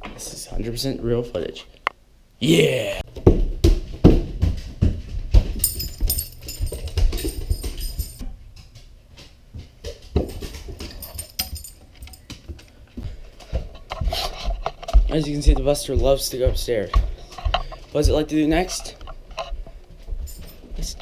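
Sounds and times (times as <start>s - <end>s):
dog paws thudding on stairs: 3.2s - 21.0s
collar tags jingling: 5.6s - 8.2s, 10.8s - 12.5s, 20.2s - 21.0s.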